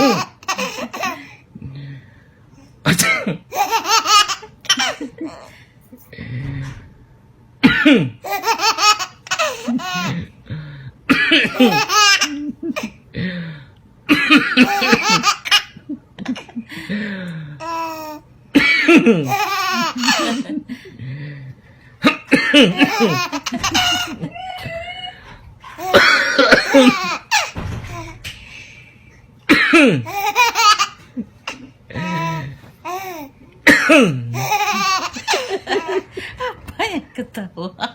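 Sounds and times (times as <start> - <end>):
baby laughing: 0.0 - 1.3, 3.5 - 5.5, 8.2 - 10.2, 11.4 - 13.0, 14.5 - 16.4, 17.6 - 18.2, 18.9 - 20.6, 22.0 - 28.2, 30.0 - 33.4, 34.3 - 36.5
baby coughing: 2.9 - 3.4, 11.1 - 13.0, 17.8 - 20.4, 22.1 - 24.1, 25.8 - 27.6, 29.5 - 30.9, 31.9 - 35.4.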